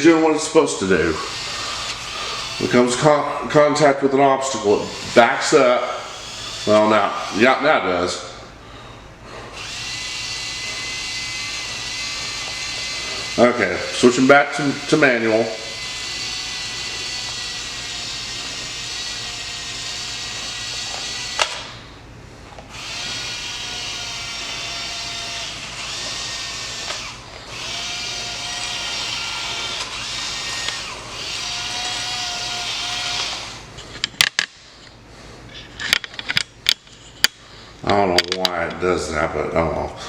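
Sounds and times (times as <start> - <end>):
small gear motors whirring: 1.0 - 3.2, 4.6 - 7.8, 9.5 - 21.9, 22.5 - 33.8.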